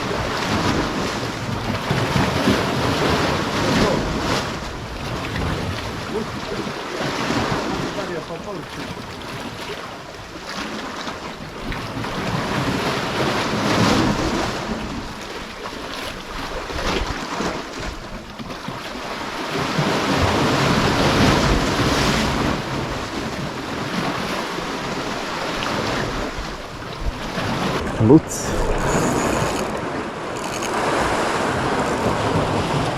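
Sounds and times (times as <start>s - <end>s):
sea waves washing on shore: 0.0s - 32.9s.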